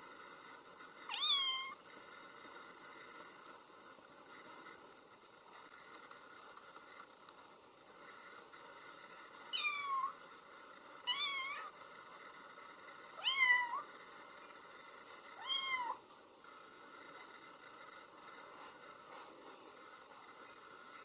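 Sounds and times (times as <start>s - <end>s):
faint steady hiss: 0.0s - 21.0s
cat meowing: 1.1s - 1.8s, 15.4s - 16.0s.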